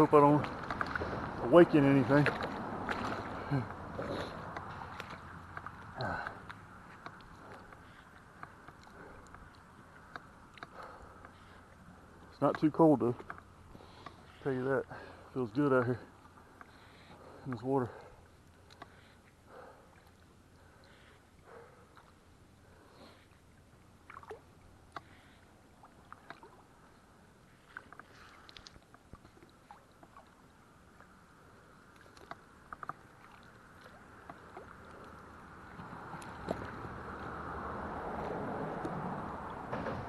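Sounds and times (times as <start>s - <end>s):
distant highway traffic hum: 0.0s - 28.3s, 29.8s - 40.0s
small splashes and ticks: 0.0s - 39.8s
water sloshing and dripping: 0.0s - 40.0s.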